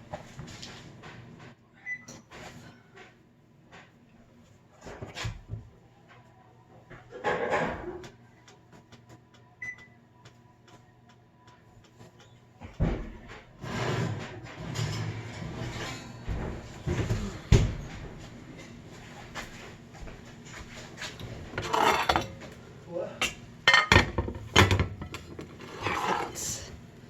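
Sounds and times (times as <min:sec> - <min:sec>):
pots and dishes clattering: 0:07.1 - 0:08.1, 0:13.7 - 0:17.2, 0:21.2 - 0:22.6, 0:23.2 - 0:26.6.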